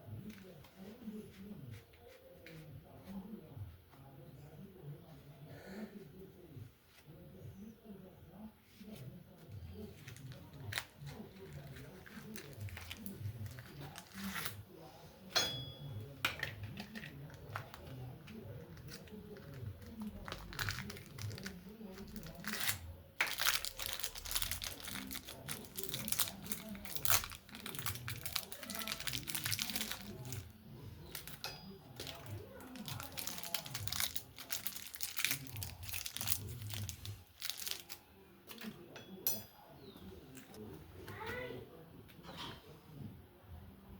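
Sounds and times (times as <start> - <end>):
crinkling and scraping handling: 8.6 - 15.2, 16.0 - 39.2
sharp ringing metal clink: 15.4 - 16.0.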